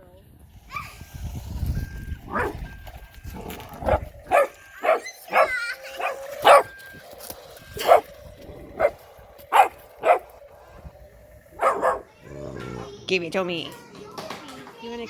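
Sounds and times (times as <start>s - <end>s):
puppy whining: 2.2s - 2.7s, 3.3s - 6.9s, 7.8s - 10.4s, 11.6s - 13.2s
puppy barking: 2.3s - 2.7s, 3.5s - 6.8s, 7.8s - 8.1s, 8.7s - 10.4s, 11.6s - 12.9s.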